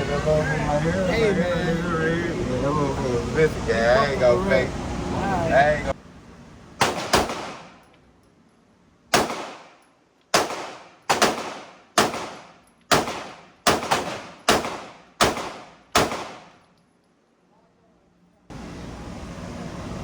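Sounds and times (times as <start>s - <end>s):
pistol shots: 6.8s - 7.9s, 9.1s - 16.6s.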